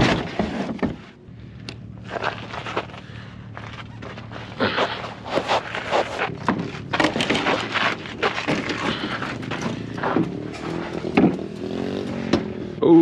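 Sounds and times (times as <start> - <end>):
irregular knocks and clatters: 5.4 - 12.5.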